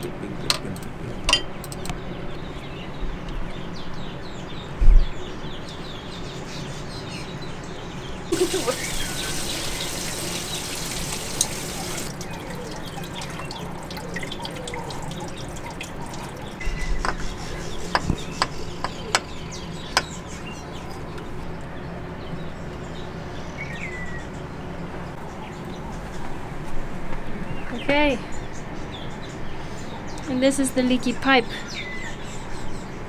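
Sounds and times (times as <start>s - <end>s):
birds chirping: 0.0s - 33.0s
water trickling and dripping: 8.3s - 16.8s, 20.0s - 21.8s.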